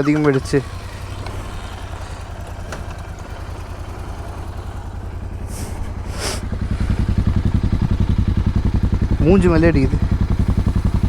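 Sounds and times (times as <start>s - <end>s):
motorcycle engine running: 0.0s - 11.0s
brief hiss: 5.5s - 6.4s.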